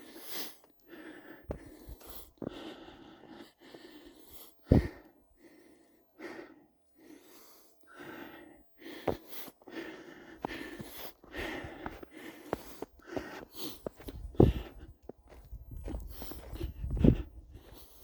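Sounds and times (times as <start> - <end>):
footsteps crunching through snow: 10.4 - 18.0.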